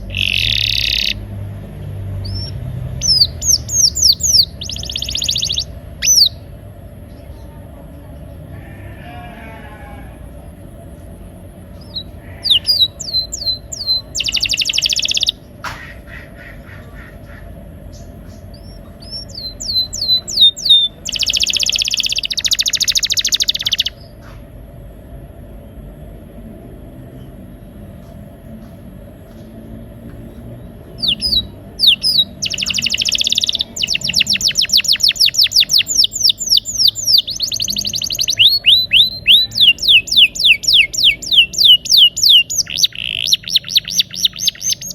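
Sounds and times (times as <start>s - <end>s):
canary singing trills: 0.0s - 24.2s, 30.6s - 44.9s.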